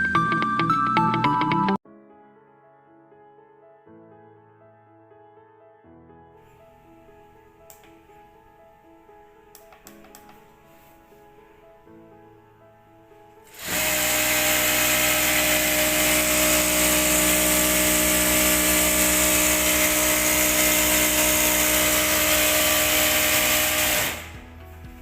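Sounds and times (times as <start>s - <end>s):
sewing machine whirring: 13.5s - 24.4s.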